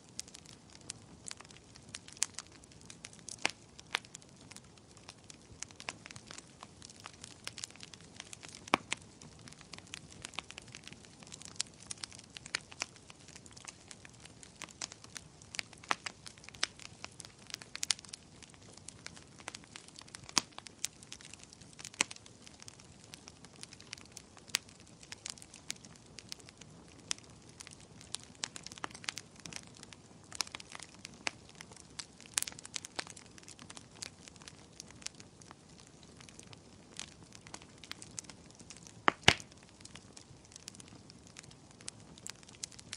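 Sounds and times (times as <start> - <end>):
faint steady hiss: 0.0 - 42.9
wood fire crackling: 0.0 - 42.9.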